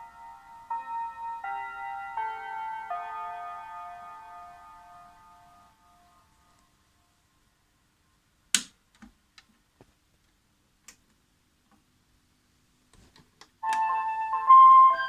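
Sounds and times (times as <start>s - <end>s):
sharp clicks: 8.6s - 9.5s.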